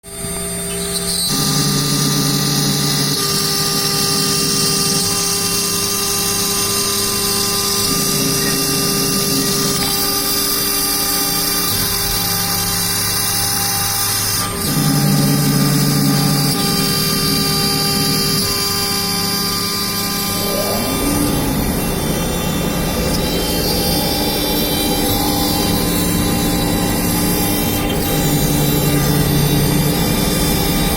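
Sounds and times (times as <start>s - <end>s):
router spindle whine: 0.0s - 30.9s
low motor hum: 14.7s - 30.9s.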